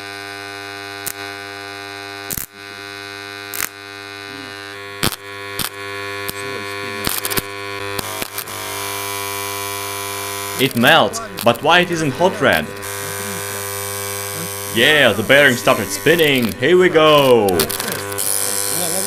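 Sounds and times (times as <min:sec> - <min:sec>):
arcing clicks and crackles: 0:02.2 - 0:02.6, 0:03.5 - 0:03.8, 0:05.0 - 0:08.7, 0:17.2 - 0:19.0
transformer humming: 0:03.8 - 0:19.0.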